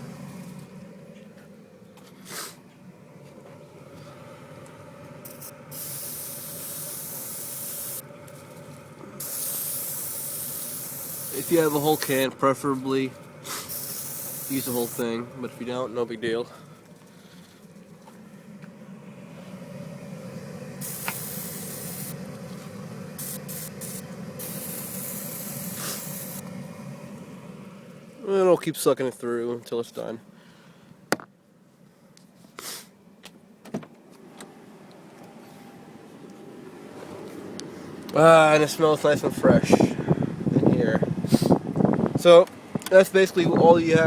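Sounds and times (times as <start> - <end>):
car blower fan whooshing: 0.0 - 17.0, 17.9 - 29.0, 34.2 - 44.0
aerosol can spraying: 5.3 - 8.0, 9.2 - 12.3, 13.5 - 15.0, 20.8 - 22.2, 23.2 - 26.4.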